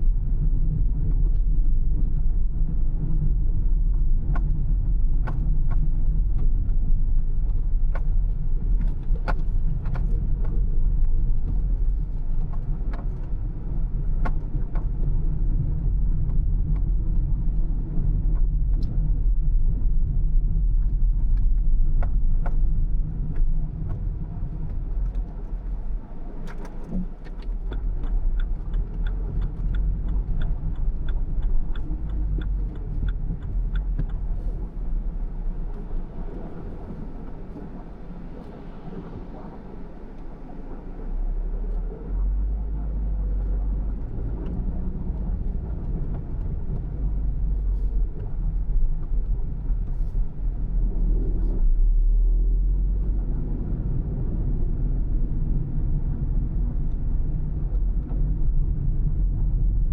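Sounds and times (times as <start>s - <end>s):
car road and engine rumble: 0.0s - 59.9s.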